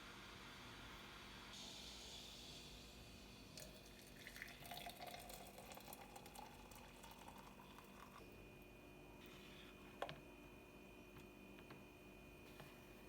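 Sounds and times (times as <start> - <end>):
liquid trickling: 3.6 - 8.2.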